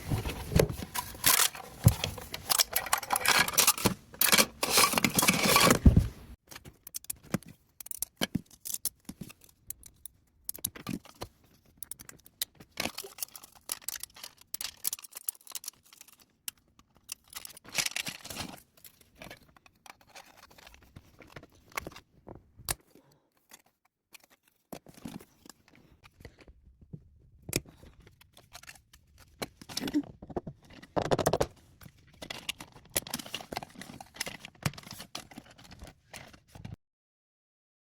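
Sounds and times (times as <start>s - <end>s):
plastic parts clicking: 0.5s - 22.0s.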